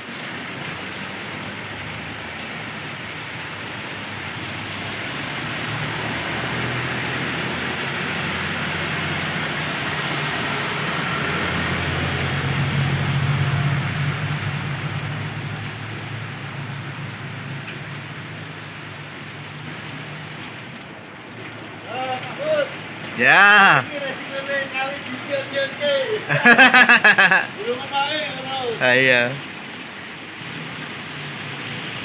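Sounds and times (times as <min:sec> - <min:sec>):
heavy rain: 0:00.0 - 0:32.0
passing vehicle engine hum: 0:04.7 - 0:17.6.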